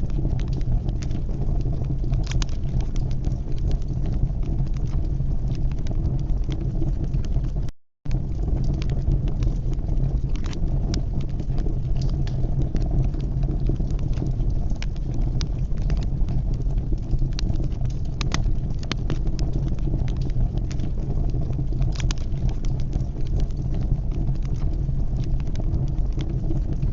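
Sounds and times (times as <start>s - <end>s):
fire crackling and popping: 0.0s - 26.9s
low fire rumble: 0.0s - 26.9s.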